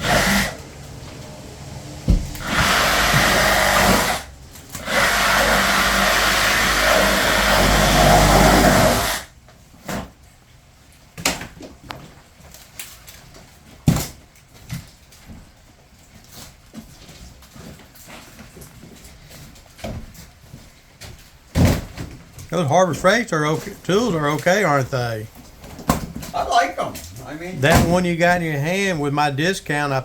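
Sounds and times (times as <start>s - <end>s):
power saw cutting wood: 0.0s - 0.8s, 2.4s - 9.3s.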